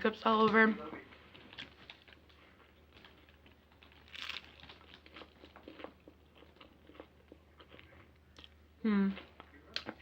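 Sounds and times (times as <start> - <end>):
crunchy chewing: 1.1 - 8.6.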